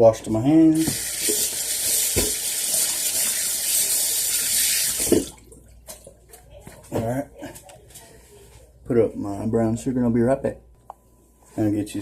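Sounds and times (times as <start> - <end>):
faucet running over hands: 0.8 - 5.3.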